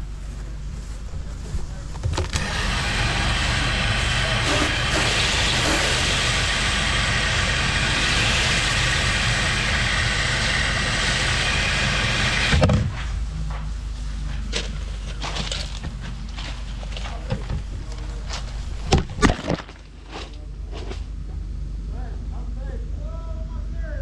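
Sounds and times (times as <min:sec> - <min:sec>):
engine hum: 0:00.0 - 0:23.6
pressure washer water hiss: 0:02.4 - 0:12.6.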